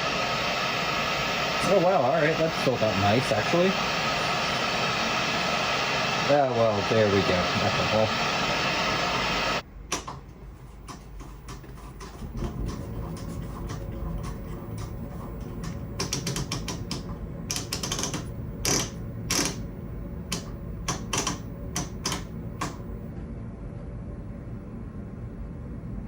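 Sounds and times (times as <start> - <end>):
steady low hum: 0.0 - 23.6
mechanical clicks and knocks: 9.9 - 23.1.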